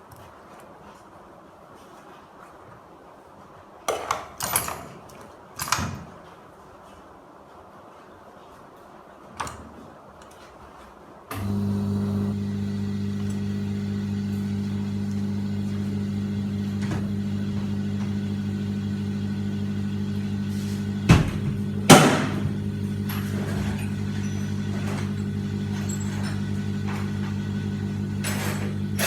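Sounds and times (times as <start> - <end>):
machine humming: 11.3 - 29.0.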